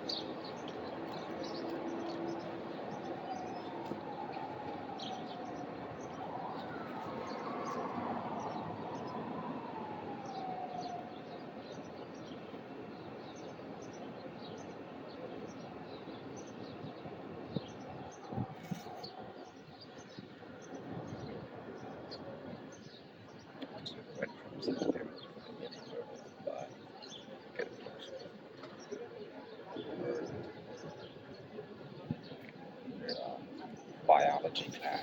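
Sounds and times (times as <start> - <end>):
siren wailing: 3.2 - 11.3
small birds chirping: 10.2 - 35.0.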